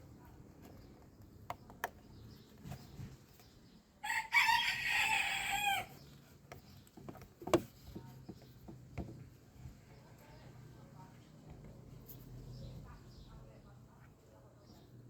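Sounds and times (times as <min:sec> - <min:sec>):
rooster crowing: 0:04.0 - 0:06.0.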